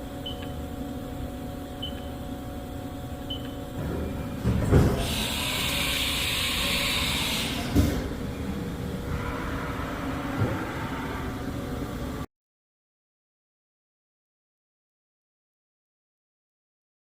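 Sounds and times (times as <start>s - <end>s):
machine hum: 0.0s - 12.3s
machine clunk: 3.8s - 5.2s, 7.6s - 8.2s
hiss: 5.0s - 8.0s.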